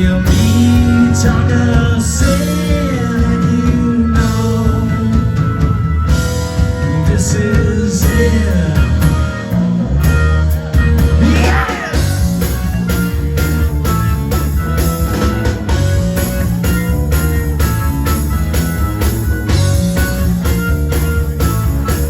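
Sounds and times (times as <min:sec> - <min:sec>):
rock band playing: 0:00.0 - 0:22.0
electric guitar bending notes: 0:08.5 - 0:22.0.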